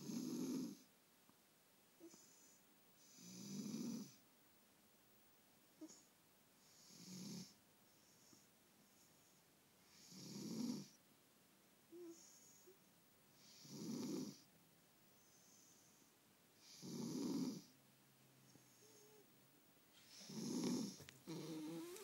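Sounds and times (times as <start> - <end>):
cat snoring: 0.0 - 0.9, 2.0 - 4.2, 6.6 - 11.0, 11.9 - 12.8, 13.4 - 14.5, 16.6 - 17.7, 18.6 - 19.2, 20.1 - 22.0
soft breaths: 2.0 - 3.3, 5.7 - 11.0, 11.8 - 22.0.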